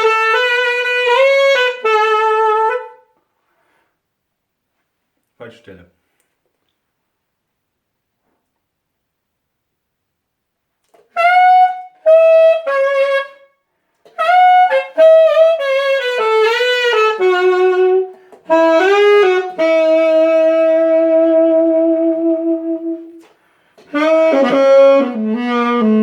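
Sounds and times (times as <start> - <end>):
saxophone pop melody: 0.0 - 3.2, 10.9 - 26.0.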